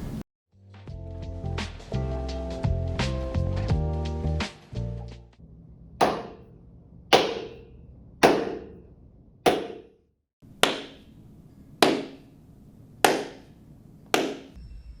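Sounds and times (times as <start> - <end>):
hand claps with room echo: 10.6 - 11.0, 11.8 - 12.2, 13.1 - 13.5, 14.2 - 14.6.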